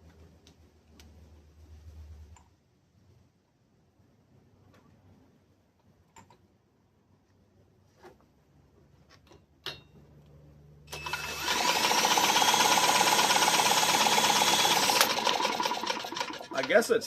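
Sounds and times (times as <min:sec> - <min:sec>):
mower engine whirring clatter: 0:10.9 - 0:16.9.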